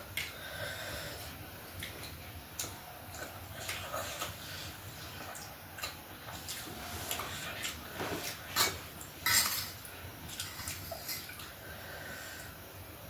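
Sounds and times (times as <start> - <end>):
dishes clattering: 8.1 - 9.8
cutlery clinking against dishes: 8.6 - 9.8.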